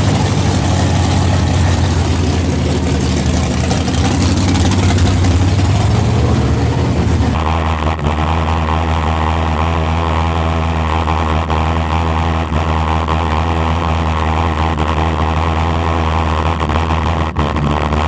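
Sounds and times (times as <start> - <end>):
car engine idling: 0.0 - 7.4.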